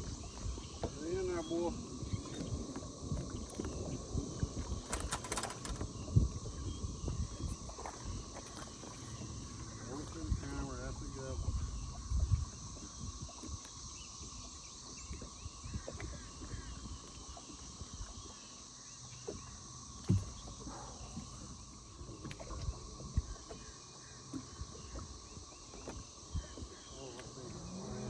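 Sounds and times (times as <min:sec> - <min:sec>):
insects droning: 0:00.0 - 0:28.0
short insect chirps: 0:04.5 - 0:10.6
dull knocks in a boat: 0:19.2 - 0:21.4.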